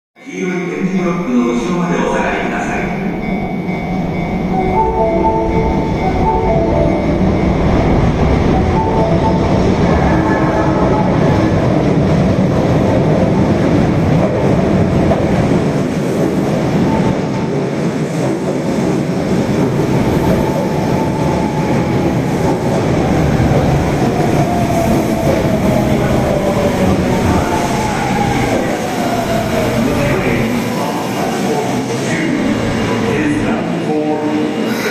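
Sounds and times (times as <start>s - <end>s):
train wheels rumbling on rails: 1.9s - 34.9s.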